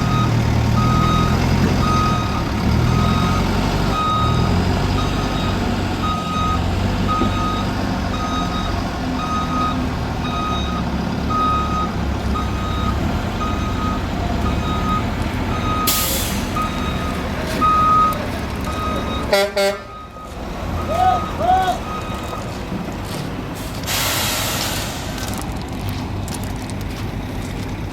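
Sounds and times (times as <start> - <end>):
reversing alarm beeping: 0.0 - 22.6
diesel truck engine running: 0.0 - 27.9
air hiss: 23.8 - 25.2.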